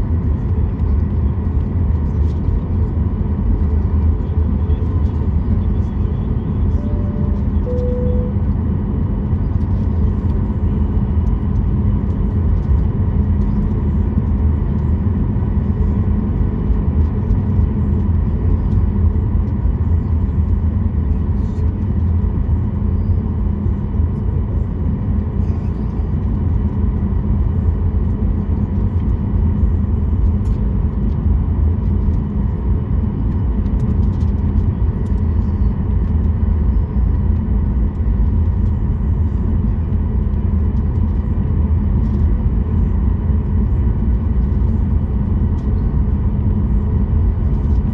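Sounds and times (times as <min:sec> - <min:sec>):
airplane cabin engine rumble: 0:00.0 - 0:47.9
two-note cabin chime: 0:06.8 - 0:08.4.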